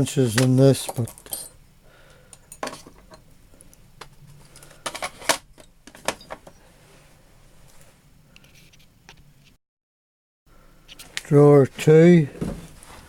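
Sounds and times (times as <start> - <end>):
metal punches clinking in drawer: 0.3 - 1.6, 2.4 - 3.2.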